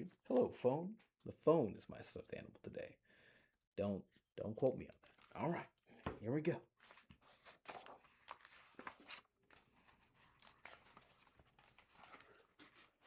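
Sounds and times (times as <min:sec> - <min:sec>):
paper rustling: 0:06.8 - 0:13.0.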